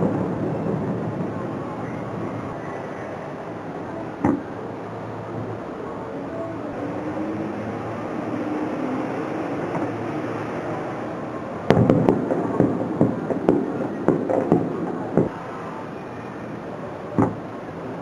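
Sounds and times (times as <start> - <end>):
firework bangs: 9.5 - 15.5, 17.1 - 17.5.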